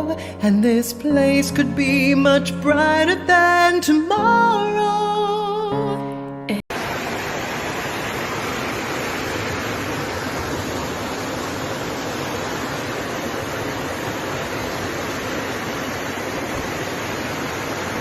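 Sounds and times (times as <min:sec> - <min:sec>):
floodwater rushing: 0:06.7 - 0:18.0.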